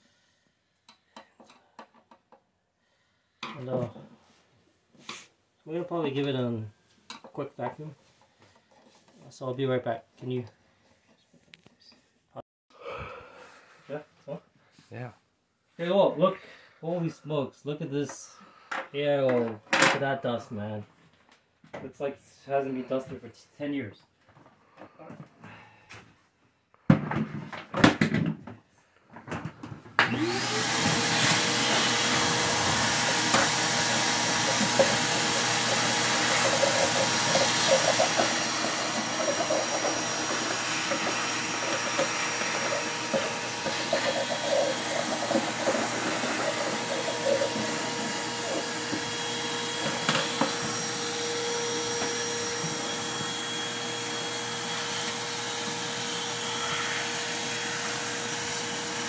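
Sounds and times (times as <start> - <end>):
vacuum cleaner motor whine: 30.0 - 59.0.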